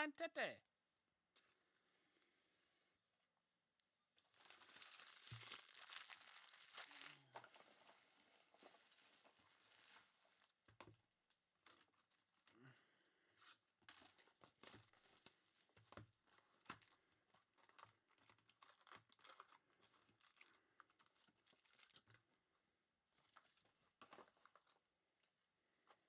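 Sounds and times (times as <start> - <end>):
wrappers crinkling: 4.2 - 10.6, 13.4 - 22.2.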